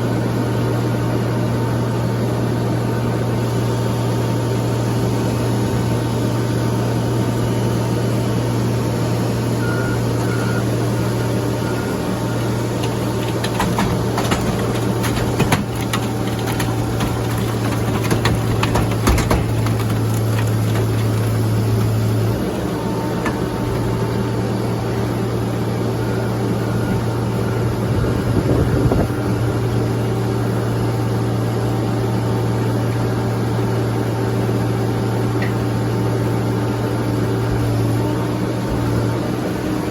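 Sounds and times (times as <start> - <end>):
heavy machine engine humming: 0.0 - 39.9
metallic clanks and knocks: 12.4 - 24.0.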